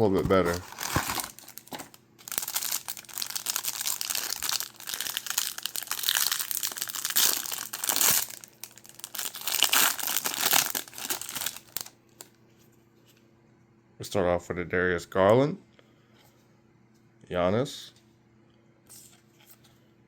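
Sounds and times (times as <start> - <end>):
cardboard packaging crinkling: 0.0 - 11.9.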